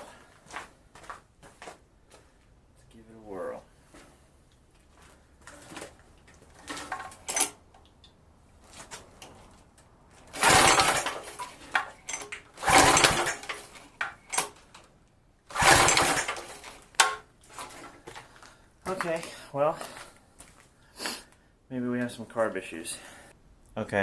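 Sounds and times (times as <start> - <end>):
recoil starter pulls on engine: 6.5 - 7.6, 10.2 - 14.6, 15.5 - 18.0.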